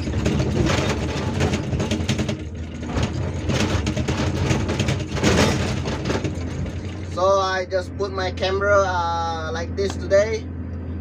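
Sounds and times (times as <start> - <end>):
hydraulic breaker hammering rock: 0.0 - 7.2
excavator diesel engine under load: 0.0 - 11.0.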